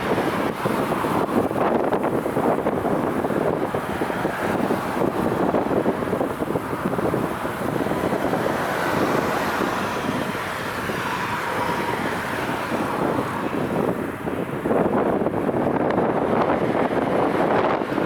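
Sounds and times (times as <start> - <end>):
wind buffeting microphone: 0.0 - 18.0.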